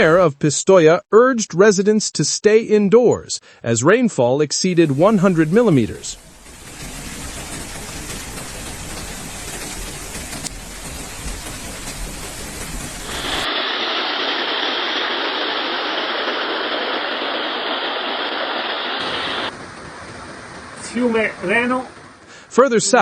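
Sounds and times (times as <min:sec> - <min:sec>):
heavy rain: 0:04.7 - 0:23.0
rushing floodwater: 0:04.8 - 0:23.0.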